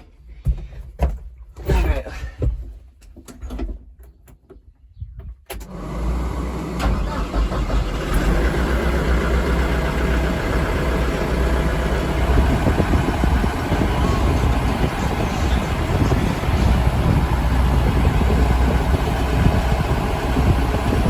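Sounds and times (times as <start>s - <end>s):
tractor diesel engine running: 5.6s - 21.0s.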